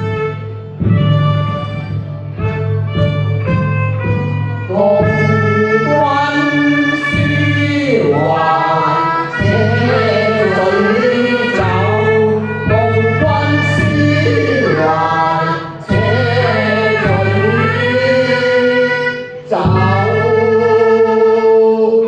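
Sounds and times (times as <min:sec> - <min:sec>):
low instrumental accompaniment: 0:00.0 - 0:22.0
operatic singing: 0:04.6 - 0:22.0.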